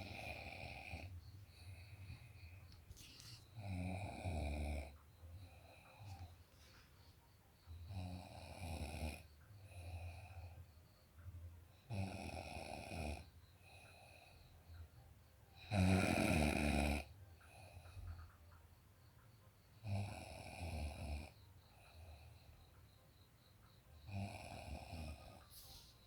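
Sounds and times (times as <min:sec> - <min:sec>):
person snoring: 0:00.0 - 0:02.3, 0:02.9 - 0:05.0, 0:11.9 - 0:13.3, 0:15.7 - 0:17.1, 0:24.1 - 0:25.9
quiet breaths: 0:00.0 - 0:26.0.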